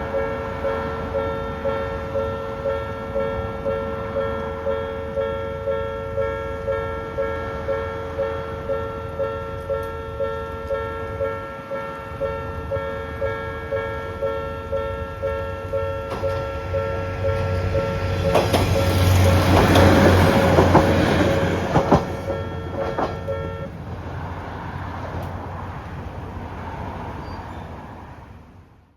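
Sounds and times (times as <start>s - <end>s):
electronic crossing bell: 0.0s - 19.2s, 21.2s - 23.8s
diesel train rumbling: 0.0s - 28.9s
wheels knocking over rail joints: 17.4s - 23.5s.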